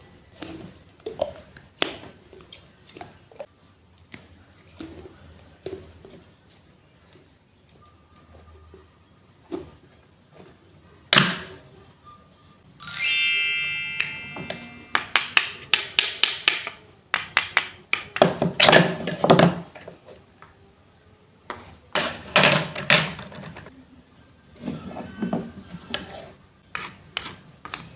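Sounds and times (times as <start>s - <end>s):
bright ringing clink: 12.8s - 15.1s.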